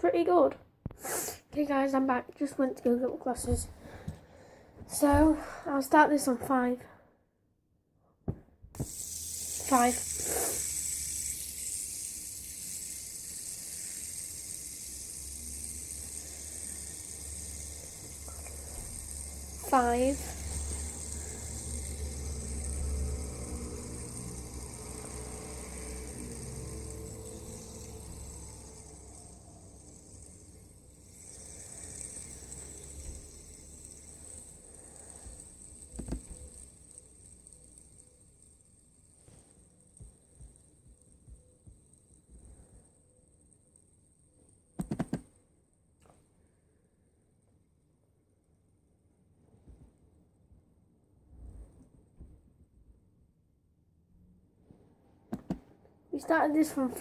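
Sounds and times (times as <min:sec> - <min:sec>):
steady hiss: 0:08.8 - 0:43.9
low hum: 0:08.8 - 0:44.8.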